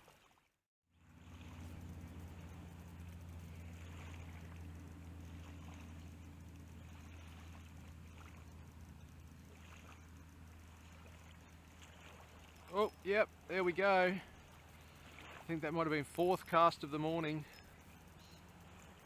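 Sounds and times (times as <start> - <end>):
light splashes on water: 0.0 - 12.9, 13.7 - 15.8.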